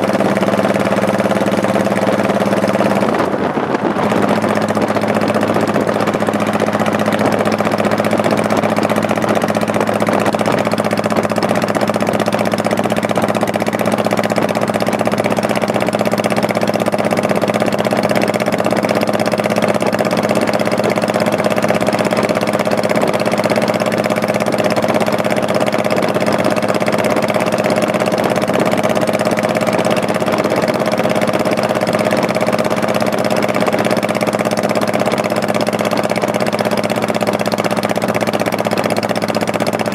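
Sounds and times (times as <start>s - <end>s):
motorcycle engine running: 0.0s - 39.9s
wind noise: 1.8s - 16.0s, 17.0s - 34.0s.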